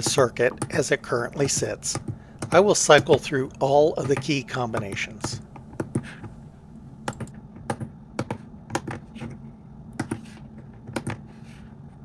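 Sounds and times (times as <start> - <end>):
push buttons clicking: 0.0 - 7.3
low steady hum: 0.0 - 7.4.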